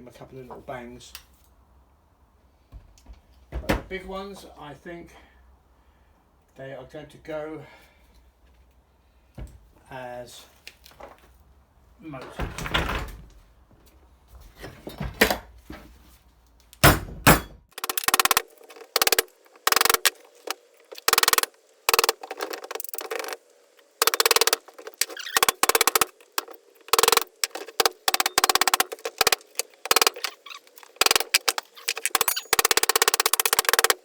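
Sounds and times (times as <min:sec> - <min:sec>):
hammer knocking on metal: 0:16.8 - 0:18.4.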